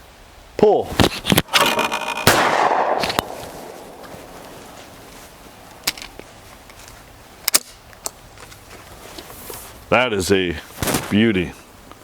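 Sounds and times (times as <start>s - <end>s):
shotgun shot: 1.6s - 4.4s.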